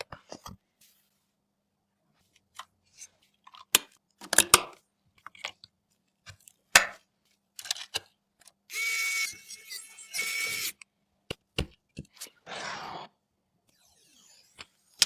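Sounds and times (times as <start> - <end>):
short rasping sounds with whine: 8.7 - 10.8, 12.4 - 13.2, 13.8 - 15.0.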